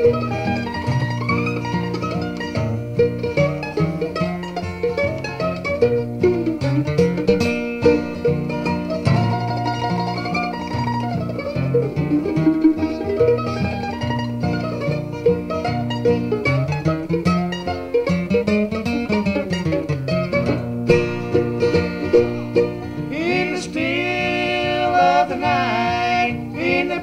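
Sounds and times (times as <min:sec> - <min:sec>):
bluegrass acoustic string music: 0:00.0 - 0:27.0.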